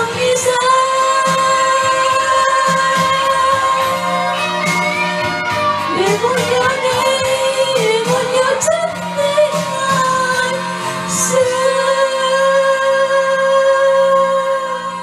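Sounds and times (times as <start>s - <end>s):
person singing wordless vocal: 0.0s - 4.7s, 5.8s - 15.0s
sustained instrumental backing: 0.0s - 13.1s.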